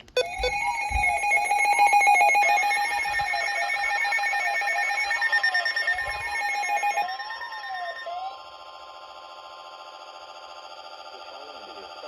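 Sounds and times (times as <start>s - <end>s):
high beeping tones: 0.0s - 8.4s.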